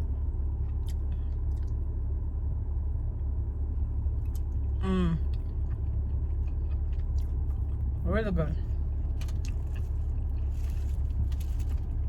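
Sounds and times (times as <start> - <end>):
person chewing: 0.6 - 1.8, 4.2 - 8.0, 9.0 - 11.9
person humming: 4.8 - 5.3.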